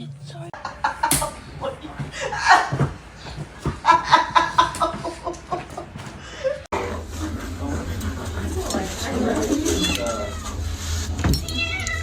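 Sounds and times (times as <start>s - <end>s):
person laughing: 0.6s - 6.7s.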